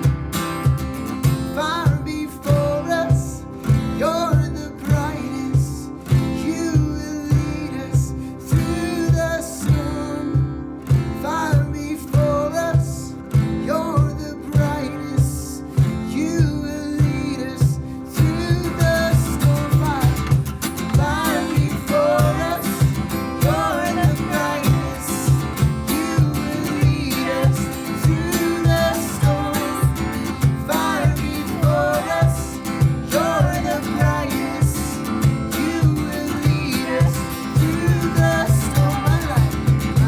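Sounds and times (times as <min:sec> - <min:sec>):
acoustic guitar: 0:00.0 - 0:40.0
person singing: 0:16.2 - 0:40.0
steady bass beat: 0:18.5 - 0:40.0.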